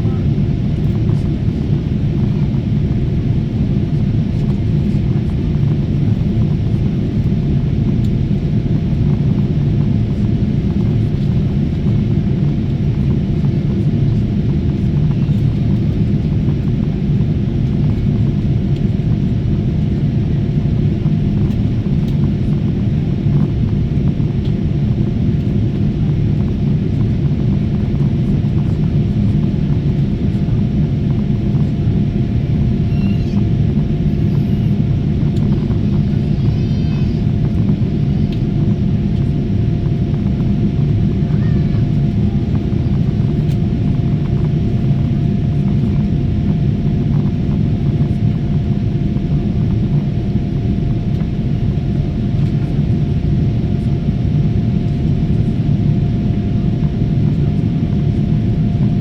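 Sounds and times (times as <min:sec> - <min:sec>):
jet cabin low rumble: 0:00.0 - 0:59.0.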